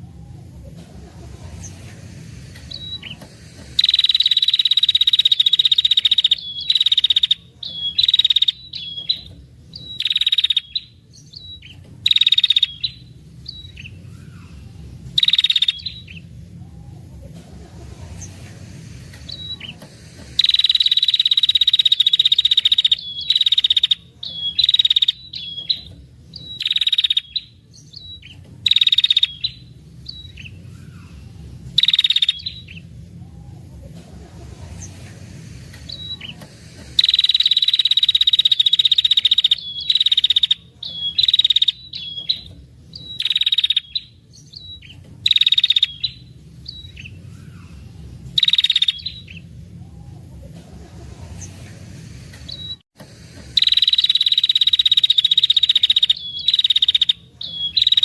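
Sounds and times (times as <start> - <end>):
short trilled bursts: 0.0 - 14.0, 14.9 - 30.6, 31.3 - 33.1, 34.4 - 44.1, 53.3 - 58.0
bird buzzy trills: 0.0 - 58.0.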